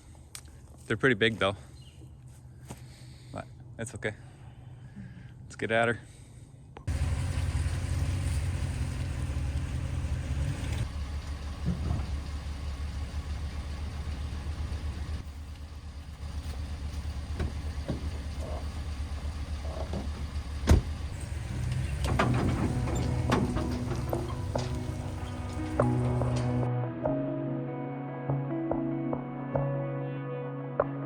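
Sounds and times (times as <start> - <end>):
excavator engine running: 6.9 - 26.7
metallic clanking: 16.8 - 26.7.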